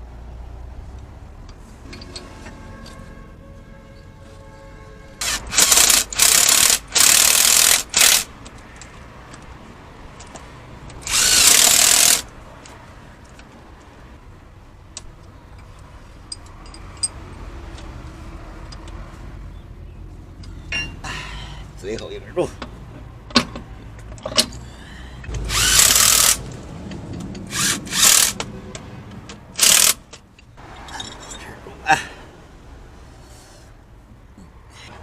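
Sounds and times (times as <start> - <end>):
power tool bursts: 5.2 - 8.3, 11.1 - 12.2, 25.4 - 26.4, 27.5 - 28.4, 29.6 - 30.0.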